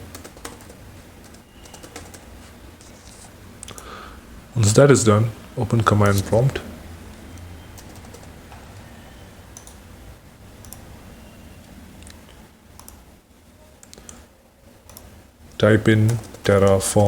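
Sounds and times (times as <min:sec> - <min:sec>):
steady low hum: 0:00.0 - 0:17.0
keyboard and mouse clicks: 0:00.2 - 0:02.3, 0:09.6 - 0:09.8, 0:10.6 - 0:10.9, 0:12.0 - 0:13.0, 0:14.9 - 0:15.1.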